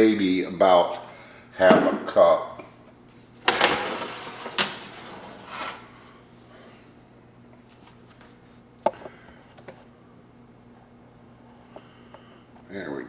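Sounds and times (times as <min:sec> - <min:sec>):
rustling scrape: 0:03.5 - 0:06.1.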